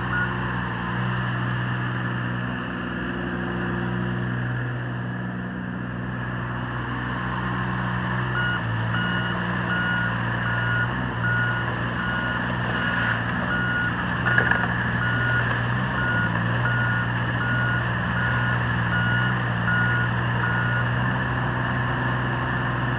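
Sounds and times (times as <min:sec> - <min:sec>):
excavator diesel engine running: 0:00.0 - 0:22.9
travel alarm beeping: 0:08.4 - 0:14.4, 0:15.0 - 0:20.8.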